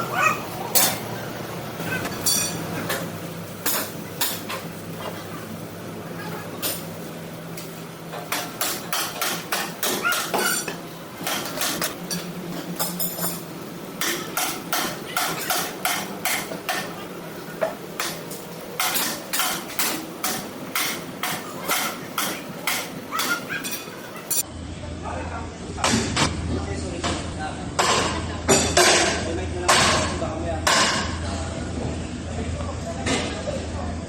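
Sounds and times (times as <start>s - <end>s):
hammer striking metal: 14.0s - 16.9s.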